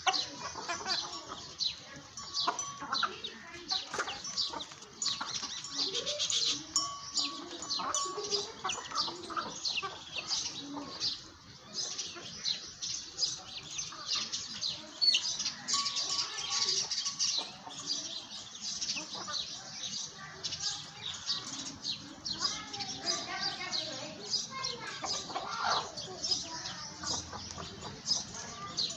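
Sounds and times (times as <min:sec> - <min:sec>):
small birds chirping: 0:00.0 - 0:28.9.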